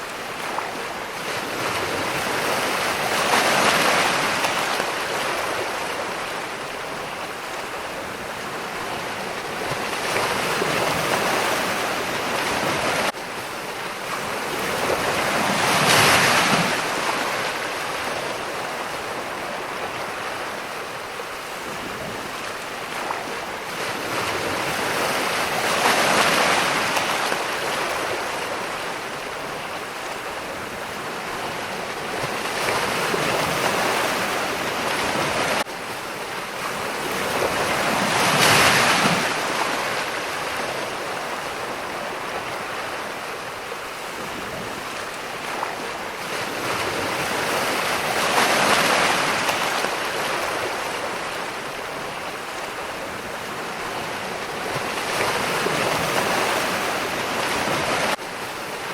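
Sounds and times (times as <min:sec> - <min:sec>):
ocean waves breaking: 0:00.0 - 0:58.9.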